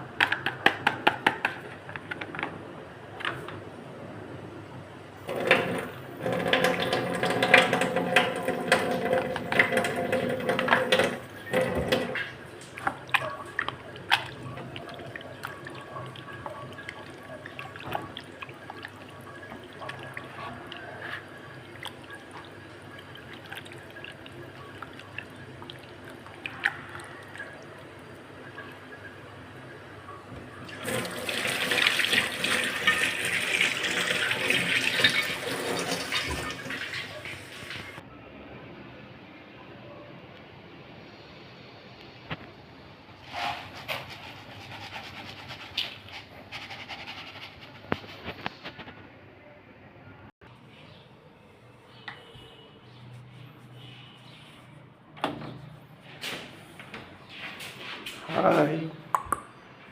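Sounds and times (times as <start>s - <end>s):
water running and dripping: 5.3s - 38.0s.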